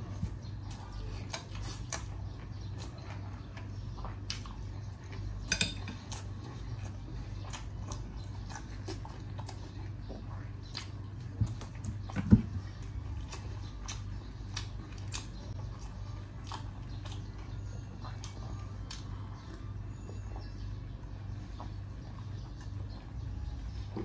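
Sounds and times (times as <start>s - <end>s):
chewing: 0.0s - 24.0s
utensils clicking against dish: 5.5s - 6.1s.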